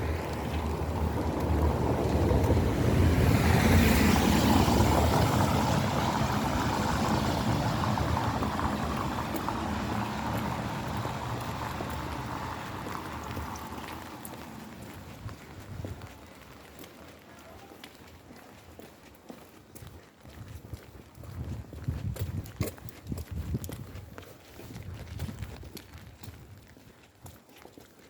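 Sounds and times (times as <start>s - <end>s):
car tyres hissing on wet road: 0.0s - 15.3s.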